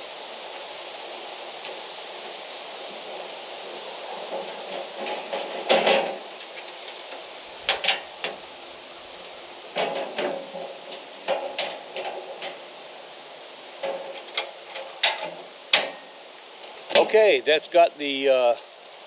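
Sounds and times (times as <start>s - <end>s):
metal clanks and knocks: 4.3s - 6.6s, 7.7s - 8.4s, 9.7s - 12.6s, 13.8s - 16.1s.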